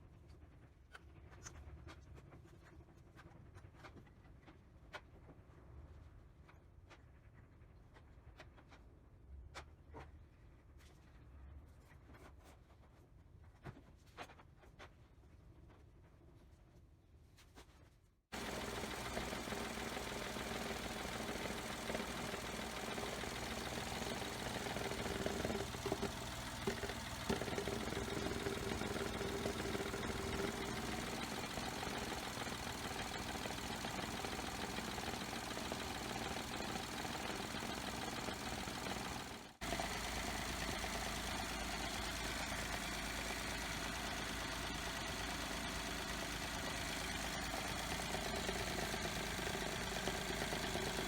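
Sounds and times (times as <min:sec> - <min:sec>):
car engine running steadily: 0:18.3 - 0:51.0.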